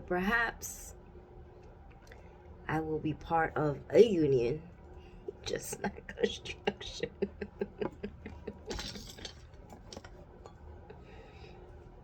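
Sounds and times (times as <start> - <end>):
light clinks of small objects: 8.6 - 10.1.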